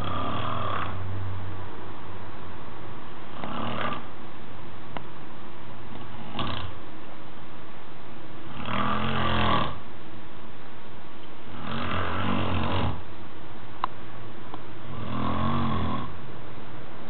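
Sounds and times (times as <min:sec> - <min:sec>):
man snoring: 0:00.0 - 0:01.0, 0:03.3 - 0:04.1, 0:06.1 - 0:06.8, 0:08.4 - 0:09.8, 0:11.5 - 0:13.0, 0:14.8 - 0:16.2
steady background noise: 0:00.0 - 0:17.0.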